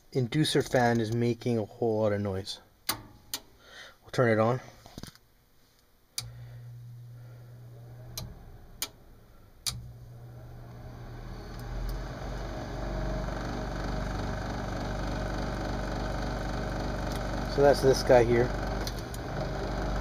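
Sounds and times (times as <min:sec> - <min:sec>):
low steady hum: 0:00.0 - 0:20.0
fan motor grinding: 0:06.3 - 0:20.0.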